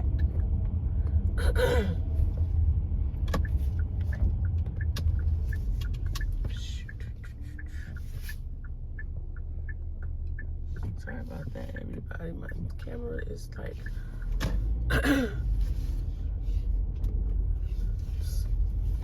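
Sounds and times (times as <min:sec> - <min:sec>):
car rumble from inside cabin: 0:00.0 - 0:19.0
light ticks: 0:03.2 - 0:14.6.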